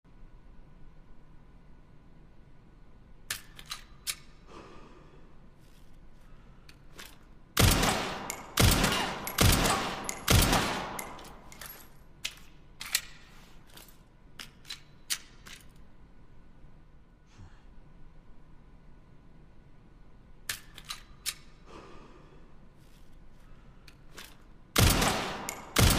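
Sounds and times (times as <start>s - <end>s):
pistol shots with echo: 7.6s - 11.5s, 24.8s - 25.9s.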